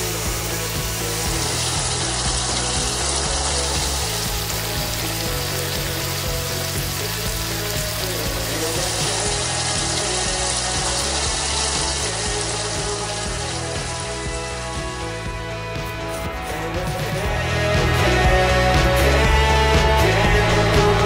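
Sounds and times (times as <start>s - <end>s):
crackling hiss: 0.0s - 15.0s
background music with low notes: 0.0s - 21.0s.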